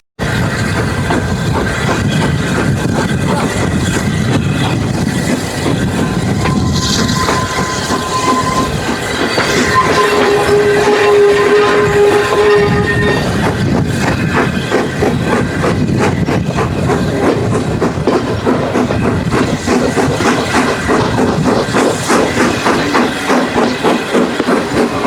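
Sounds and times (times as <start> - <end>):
train rumbling along track: 0.2 - 25.0
wheels clicking over rail joints: 0.3 - 25.0
lower whine: 4.7 - 13.6.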